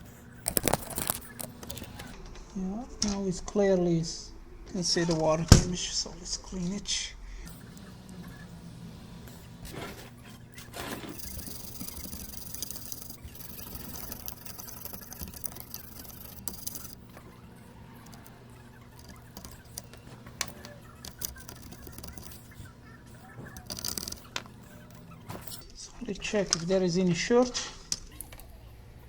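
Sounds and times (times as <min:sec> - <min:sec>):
brush scrubbing circuit board: 0:00.0 - 0:02.2, 0:05.8 - 0:26.5
small clicks: 0:00.0 - 0:03.2, 0:07.4 - 0:25.8, 0:27.4 - 0:29.0
steady low hum: 0:00.0 - 0:29.0.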